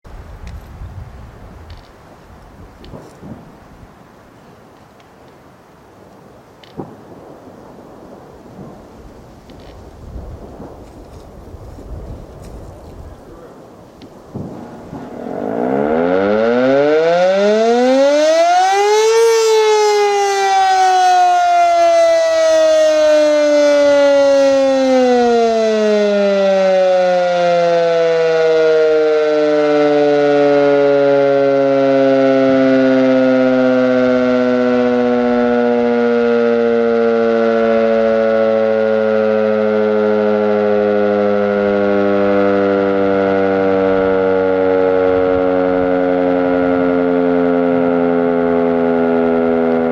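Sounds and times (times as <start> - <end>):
warning siren wailing: 14.3 - 49.9.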